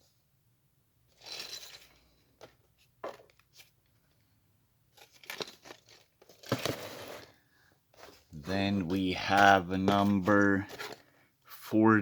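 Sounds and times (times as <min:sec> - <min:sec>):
plastic bricks rustling: 0:04.9 - 0:11.2.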